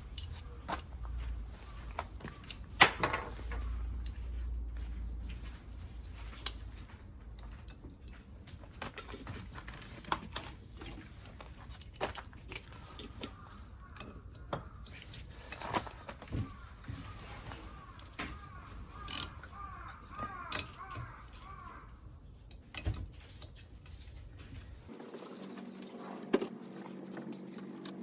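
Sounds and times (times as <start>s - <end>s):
hand tools and metal parts clicking: 0.0s - 28.0s.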